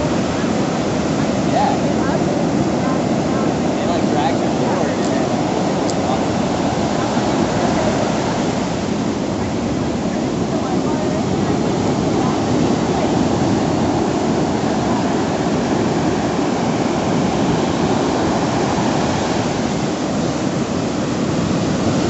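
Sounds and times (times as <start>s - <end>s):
ocean surf roaring: 0.0s - 22.0s.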